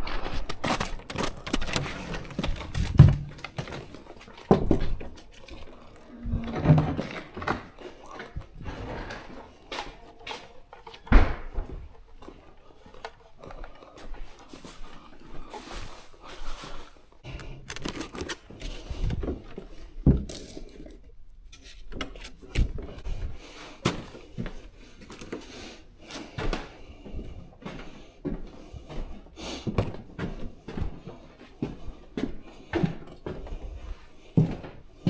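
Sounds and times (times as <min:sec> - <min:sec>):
objects being handled: 0:00.0 - 0:13.7, 0:15.5 - 0:25.5.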